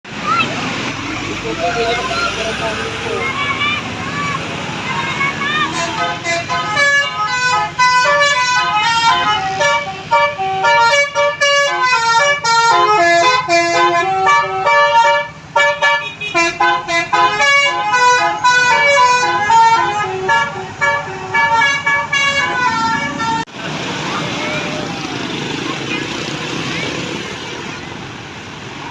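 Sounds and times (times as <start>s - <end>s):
bus musical air horn melody: 5.4s - 23.5s.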